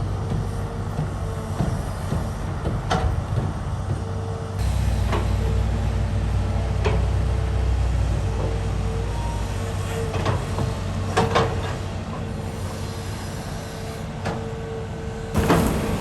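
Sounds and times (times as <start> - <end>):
excavator diesel engine running: 0.0 - 16.0
sharp metal clanks: 15.4 - 16.0.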